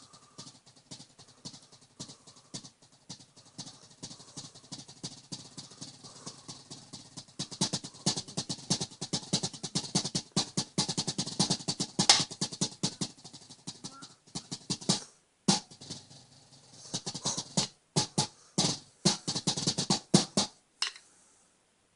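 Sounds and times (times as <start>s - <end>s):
drumsticks on mesh snare drum: 0.0s - 16.1s, 16.8s - 21.1s.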